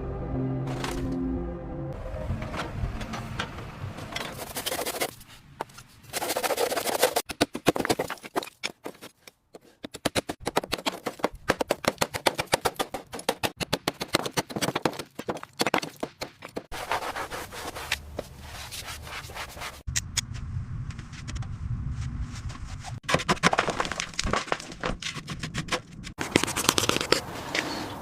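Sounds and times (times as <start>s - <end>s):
low rumbling noise: 0.0s - 4.5s, 20.0s - 23.0s
rapid scraping strokes: 4.2s - 7.3s.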